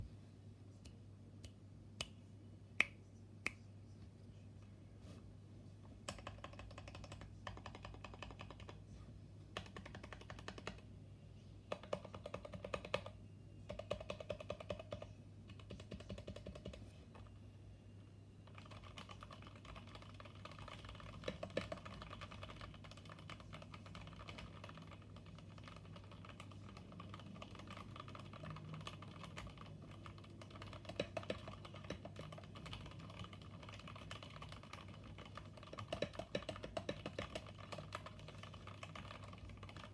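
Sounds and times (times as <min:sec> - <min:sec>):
typing on mechanical keyboard: 0:06.1 - 0:08.8, 0:09.5 - 0:10.8, 0:11.7 - 0:17.3, 0:18.4 - 0:39.9.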